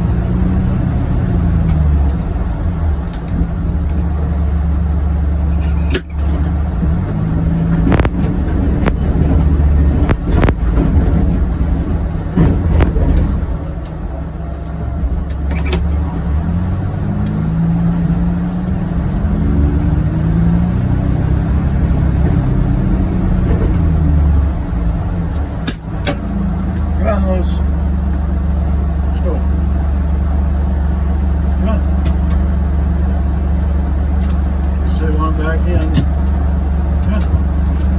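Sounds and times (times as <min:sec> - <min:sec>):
utility vehicle engine rumbling: 0:00.0 - 0:37.9.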